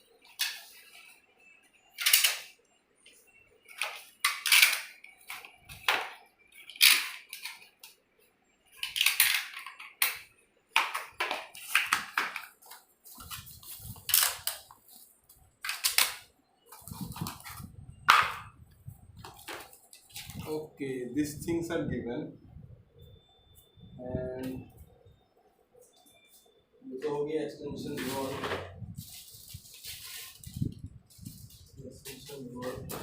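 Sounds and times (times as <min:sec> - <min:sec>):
packaging rustling: 0:29.0 - 0:32.8.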